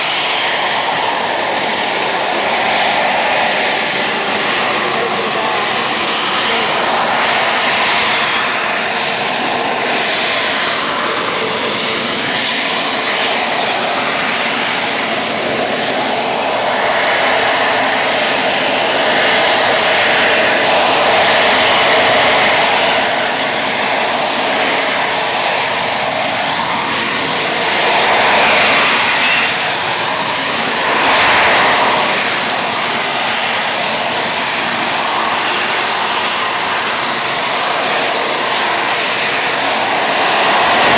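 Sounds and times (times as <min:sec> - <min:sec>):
aircraft engine rush: 0:00.0 - 0:40.9.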